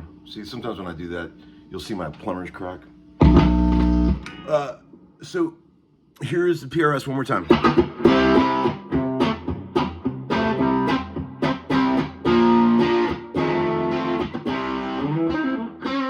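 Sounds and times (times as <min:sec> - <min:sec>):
electric guitar chords and riffs: 0:03.2 - 0:04.4, 0:07.5 - 0:16.0.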